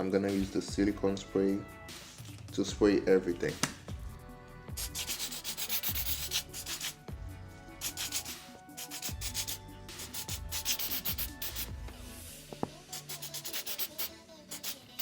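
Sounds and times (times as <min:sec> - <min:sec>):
background music: 0:00.0 - 0:15.0
aerosol spray hissing: 0:04.8 - 0:07.0, 0:07.8 - 0:11.8, 0:12.9 - 0:15.0.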